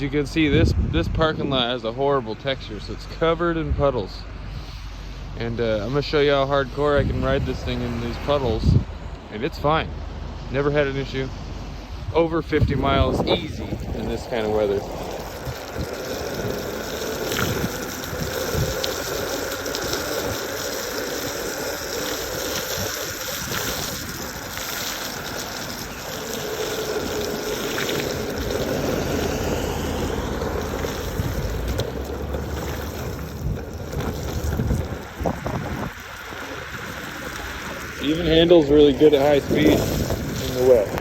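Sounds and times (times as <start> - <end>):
wheels hissing through puddles: 0.0 - 41.0
electric motor whine: 14.8 - 36.4.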